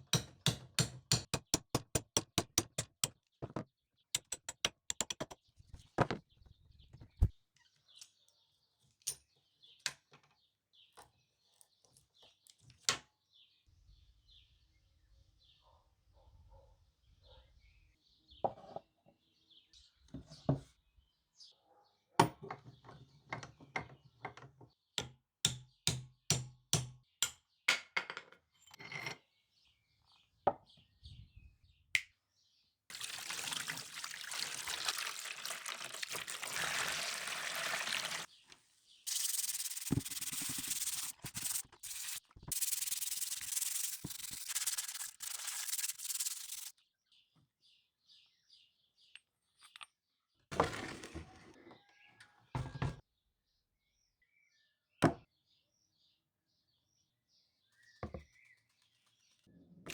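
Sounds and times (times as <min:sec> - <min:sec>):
abrasive rubbing on metal: 0:39.1 - 0:46.7.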